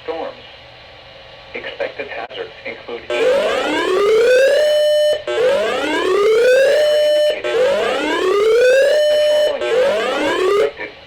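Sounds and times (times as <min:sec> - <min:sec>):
electronic siren wail: 0:03.1 - 0:10.8.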